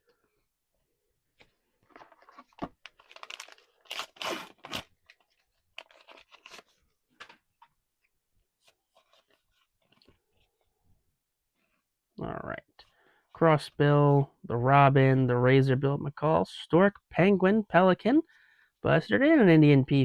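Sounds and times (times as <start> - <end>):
wrapper tearing and crinkling: 2.2 - 6.8.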